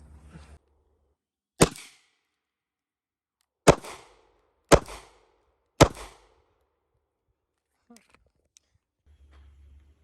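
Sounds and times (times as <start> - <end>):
gunshots: 1.6 - 2.0, 3.7 - 5.2, 5.8 - 6.3.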